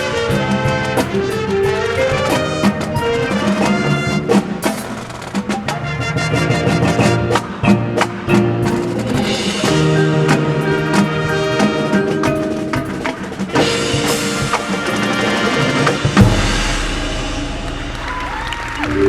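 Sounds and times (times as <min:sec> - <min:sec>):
drum line: 0:00.0 - 0:19.0
marching band playing: 0:00.0 - 0:19.0
loud accented hit ringing: 0:16.2 - 0:18.5.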